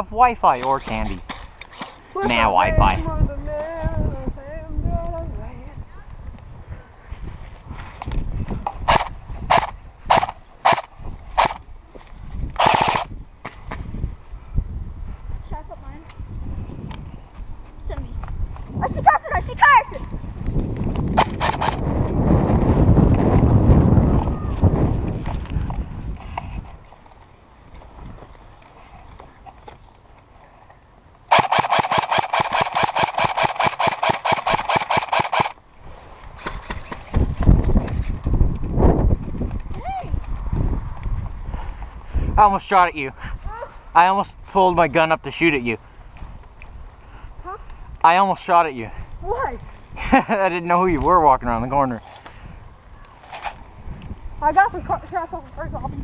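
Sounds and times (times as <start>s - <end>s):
airsoft gun full-auto burst: 8.9s - 11.6s, 12.6s - 13.1s, 21.2s - 21.8s, 31.3s - 35.6s.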